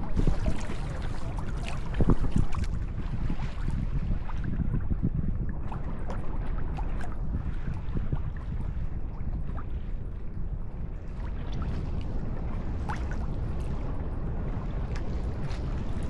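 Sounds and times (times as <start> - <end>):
water sloshing and dripping: 0.0 - 2.8
small water splashes: 0.0 - 4.5, 12.8 - 14.1
steady low rumble: 0.0 - 16.0.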